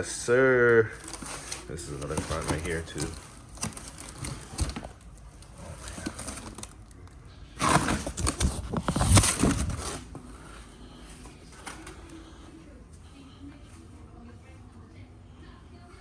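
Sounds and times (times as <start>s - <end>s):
box rustling: 0.9s - 7.0s, 7.6s - 12.2s.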